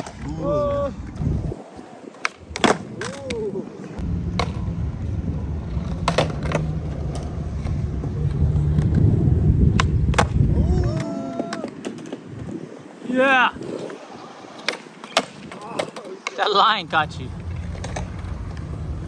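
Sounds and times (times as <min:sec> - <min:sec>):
skateboard wheels rolling on concrete: 0:00.0 - 0:19.0
skateboard clacking on ground: 0:02.0 - 0:04.8, 0:05.8 - 0:09.0, 0:09.7 - 0:19.0.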